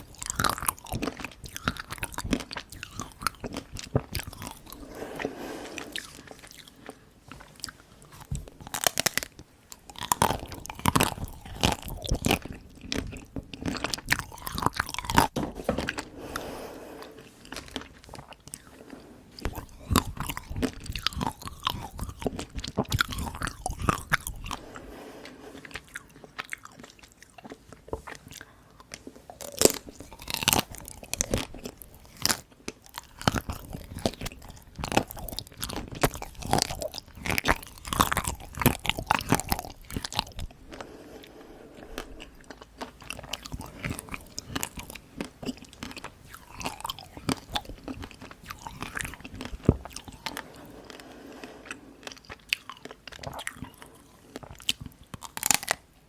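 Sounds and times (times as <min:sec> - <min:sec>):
chocolate shell crunching when bitten: 0:54.5 - 0:55.8.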